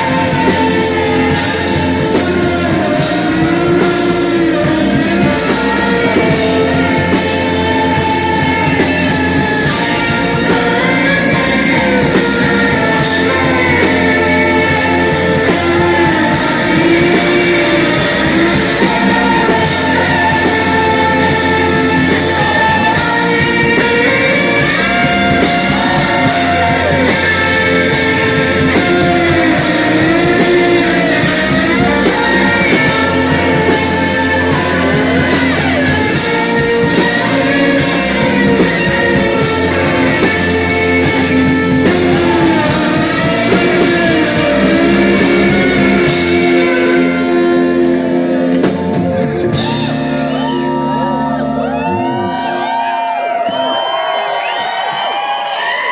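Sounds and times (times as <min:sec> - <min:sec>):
person singing: 0:00.0 - 0:53.6
rock band playing: 0:00.0 - 0:55.9.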